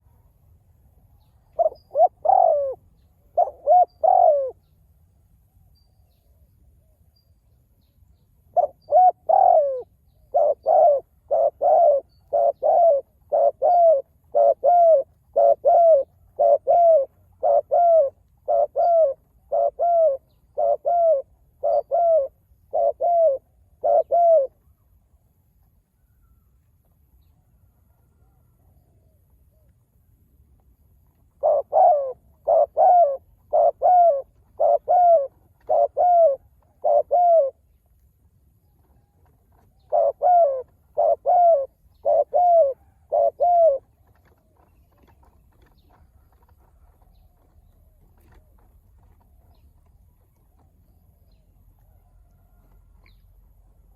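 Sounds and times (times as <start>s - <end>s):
dove cooing: 1.2s - 4.8s, 8.4s - 24.8s, 31.1s - 37.8s, 38.7s - 53.9s.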